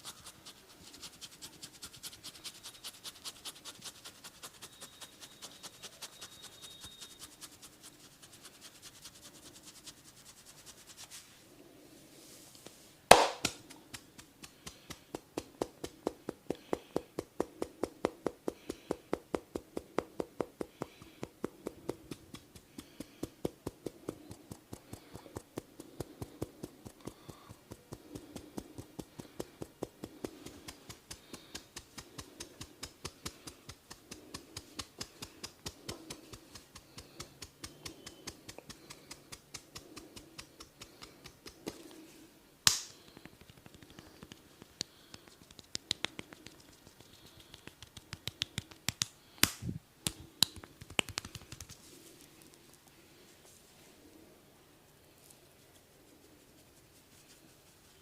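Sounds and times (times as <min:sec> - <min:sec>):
sharp cracks: 0:13.1 - 0:15.0, 0:42.6 - 0:44.0, 0:47.6 - 0:51.8
massage clicking taps: 0:13.1 - 0:41.9, 0:42.7 - 0:51.8.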